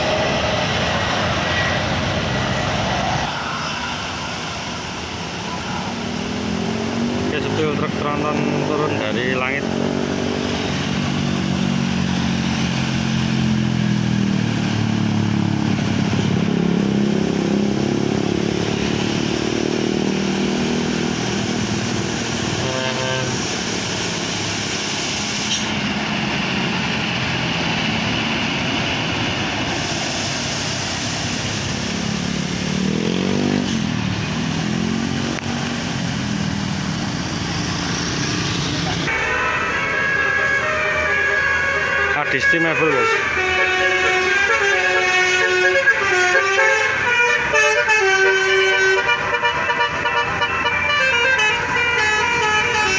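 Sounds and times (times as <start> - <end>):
deep heavy vehicle engine: 0.0 - 52.9.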